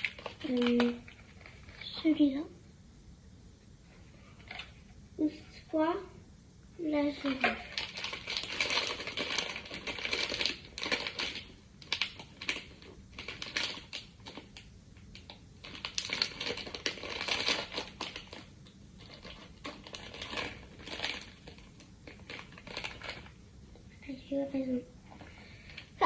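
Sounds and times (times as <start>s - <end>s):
packaging crinkling and rustling: 0.0s - 2.4s, 7.1s - 23.4s.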